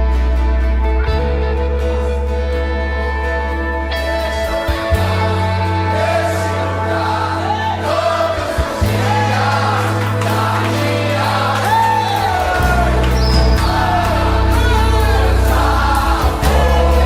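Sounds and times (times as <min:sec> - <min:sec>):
bass and keyboard chords: 0:00.0 - 0:17.0
choir singing gospel: 0:04.4 - 0:17.0.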